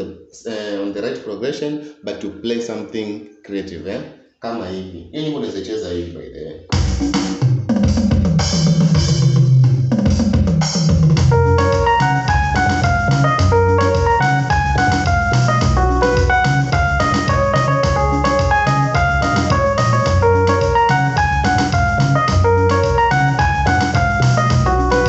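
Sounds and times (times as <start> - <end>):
drum-kit beat: 6.7 - 25.0
electronic keyboard run: 11.3 - 25.0.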